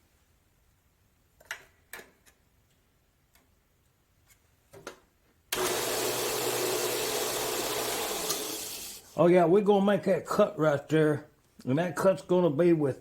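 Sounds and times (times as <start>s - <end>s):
bandsaw motor hum: 5.5s - 9.1s.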